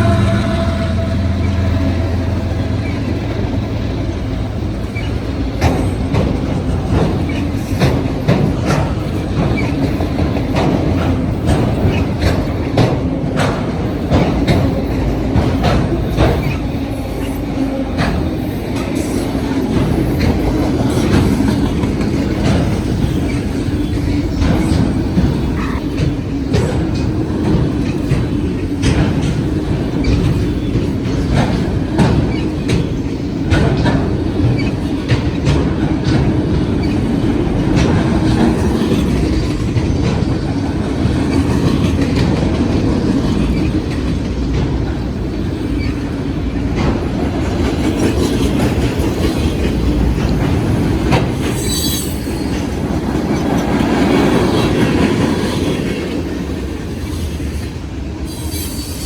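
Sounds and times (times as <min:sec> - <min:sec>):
wheels clicking over rails: 0:00.0 - 0:58.2
freight train rumbling: 0:00.0 - 0:59.0
high wheel squeal: 0:22.7 - 0:26.0, 0:51.1 - 0:53.4, 0:56.9 - 0:59.0.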